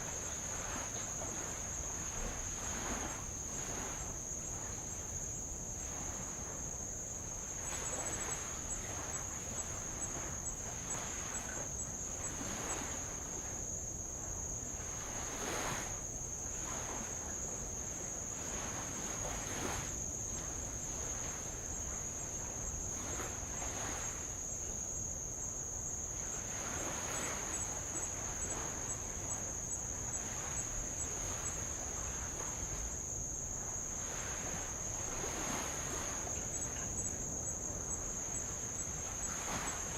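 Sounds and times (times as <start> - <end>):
waves lapping against rock: 0.0 - 4.8, 17.9 - 24.5, 26.2 - 39.9
insects chirring: 0.0 - 39.9.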